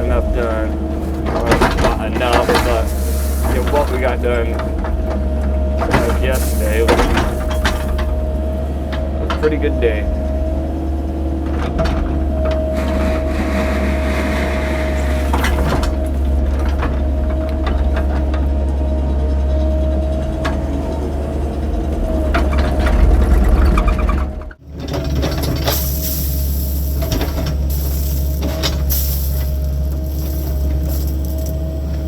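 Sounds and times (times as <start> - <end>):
bucket knocking on gravel: 0.0 - 10.0, 13.5 - 18.3, 25.1 - 32.0
excavator diesel engine running: 0.0 - 32.0
hydraulic whine: 0.0 - 32.0.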